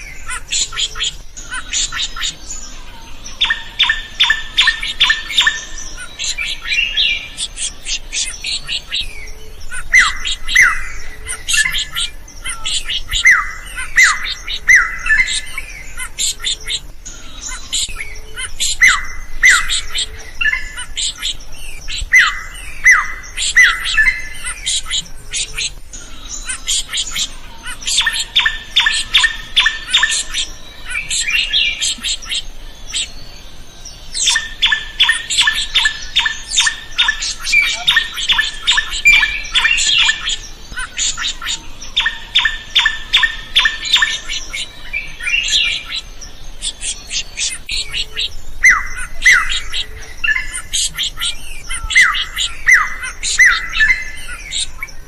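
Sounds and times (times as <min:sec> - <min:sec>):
bird singing whistles: 0:00.0 - 0:55.0
bird harsh chattering: 0:17.4 - 0:33.2, 0:34.1 - 0:54.9.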